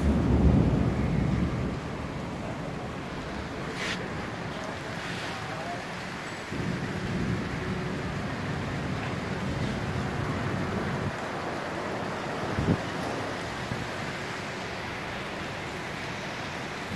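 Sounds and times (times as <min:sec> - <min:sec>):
heavy low rumble: 0:00.0 - 0:03.7
wind buffeting microphone: 0:00.0 - 0:04.4, 0:06.5 - 0:14.2
rain: 0:00.0 - 0:16.9
wind: 0:00.0 - 0:16.9
brief hiss: 0:03.7 - 0:04.1.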